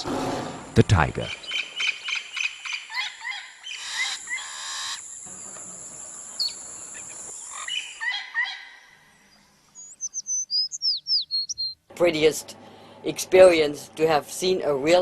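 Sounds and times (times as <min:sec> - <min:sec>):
birds chirping: 0:01.2 - 0:11.8.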